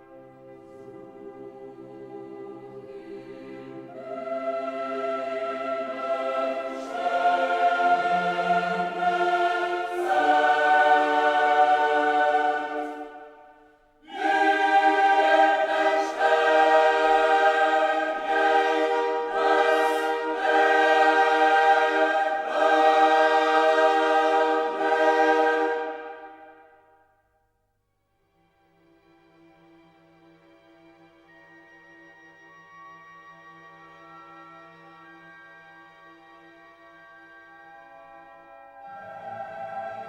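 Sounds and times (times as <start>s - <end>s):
choir singing held chords: 0.6s - 27.0s, 38.7s - 40.0s.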